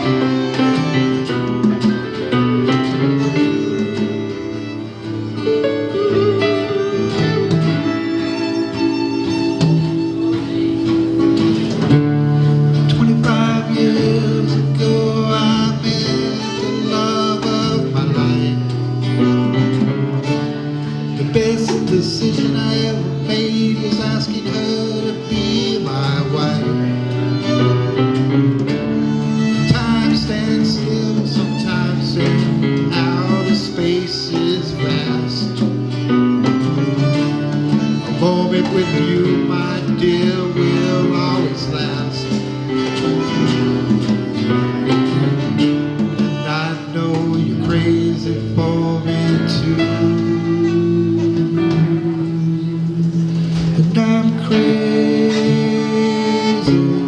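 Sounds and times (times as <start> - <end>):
bending melodic lead guitar: 0.0 - 57.0
live country band playing: 0.0 - 57.0.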